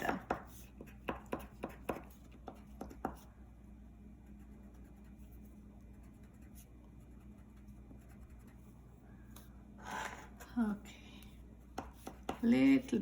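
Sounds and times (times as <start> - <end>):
crayon scratching on paper: 0.0 - 3.3, 4.2 - 8.7
faint room hum: 0.0 - 13.0.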